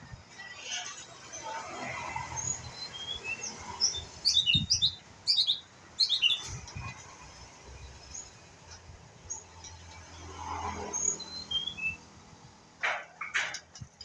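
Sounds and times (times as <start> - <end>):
bird chirping song: 2.3 - 6.7, 11.0 - 12.1.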